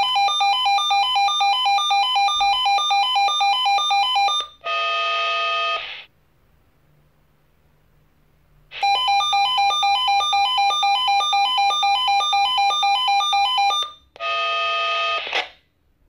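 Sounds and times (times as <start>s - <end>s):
noisy steady tone: 4.5s - 10.3s.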